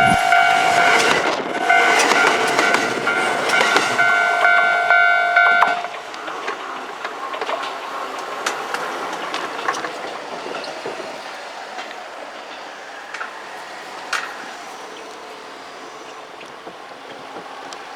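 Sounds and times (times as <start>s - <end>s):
train wheels clicking over rail joints: 0.0s - 17.9s.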